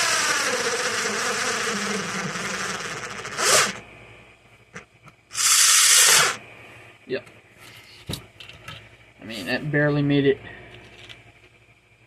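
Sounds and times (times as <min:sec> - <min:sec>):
electric screwdriver motor whining: 0:00.0 - 0:03.8, 0:05.3 - 0:06.4.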